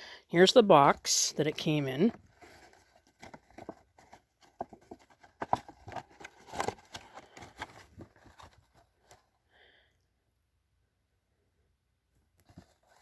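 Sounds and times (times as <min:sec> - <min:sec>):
cardboard box handled: 0:01.6 - 0:09.3, 0:12.4 - 0:13.0.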